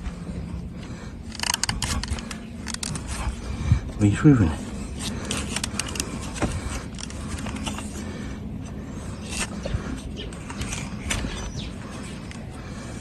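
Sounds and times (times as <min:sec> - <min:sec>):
tools cutting and scraping hoof: 0:01.3 - 0:03.4, 0:05.0 - 0:12.5.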